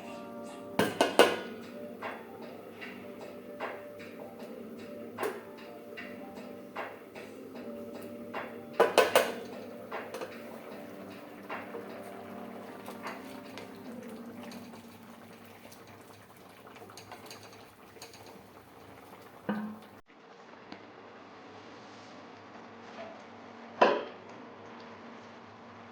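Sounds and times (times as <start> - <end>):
utensils clinking against pots: 0.0 - 20.0.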